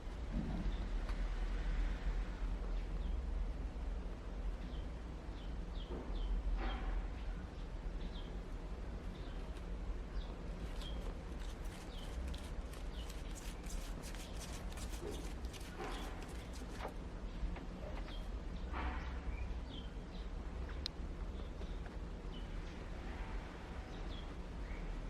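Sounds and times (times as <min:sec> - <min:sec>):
small birds chirping: 0:04.5 - 0:06.4, 0:07.2 - 0:18.7, 0:19.3 - 0:22.8.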